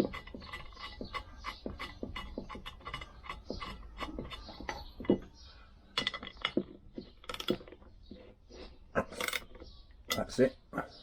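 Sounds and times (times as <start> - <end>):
metal clicks and clinks: 9.2 - 10.4.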